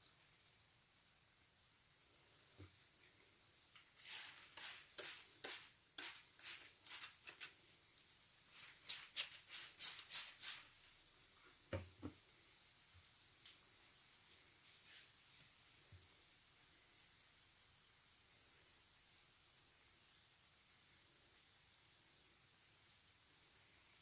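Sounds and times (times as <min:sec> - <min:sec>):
sponge squelching: 0:04.0 - 0:07.4.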